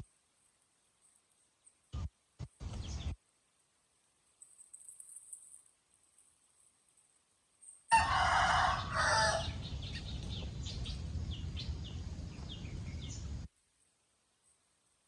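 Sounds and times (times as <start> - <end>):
rooster crowing: 7.9 - 9.7
chicks peeping: 8.8 - 13.2
low background rumble: 8.8 - 13.5.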